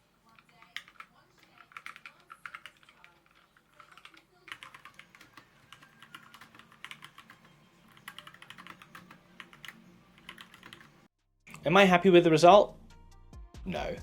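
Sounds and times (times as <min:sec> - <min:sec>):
mechanical keyboard typing: 0:00.3 - 0:10.9.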